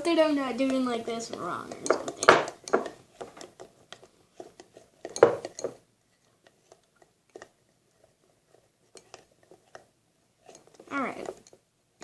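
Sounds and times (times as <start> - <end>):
kitchen containers clinking: 0.0 - 3.6.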